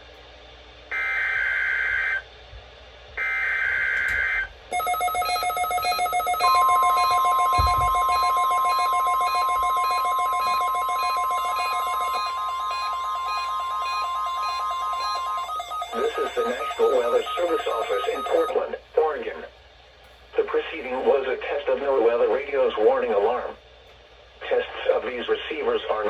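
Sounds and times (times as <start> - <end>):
steady warning alarm tone: 3.2 - 18.5
pulsing ringing alert tone: 4.7 - 18.5
data bursts screeching: 4.8 - 18.5.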